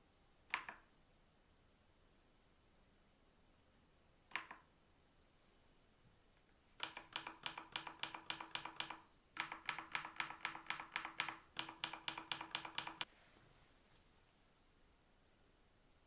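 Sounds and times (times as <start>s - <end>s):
mechanical keyboard typing: 6.8s - 13.1s.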